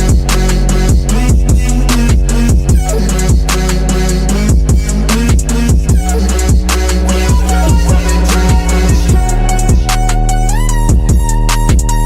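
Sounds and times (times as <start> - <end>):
hip-hop beat with heavy bass: 0.0 - 12.0.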